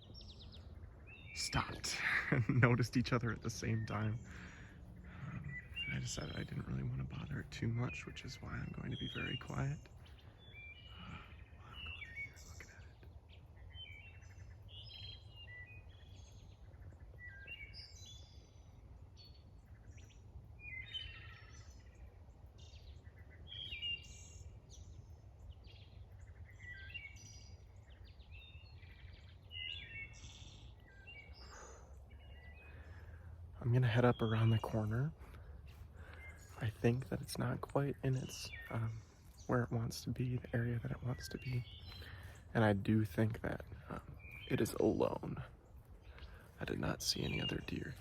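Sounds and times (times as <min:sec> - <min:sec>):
low background rumble: 0:00.0 - 0:14.8
songbirds chirping: 0:00.0 - 0:48.0.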